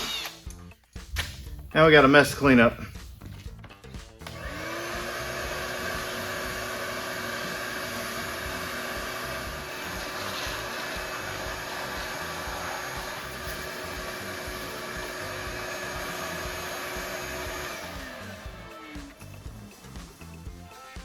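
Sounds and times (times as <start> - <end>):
vacuum motor winding down: 0.0 - 0.5, 4.2 - 20.4
shop vacuum running: 4.1 - 20.9.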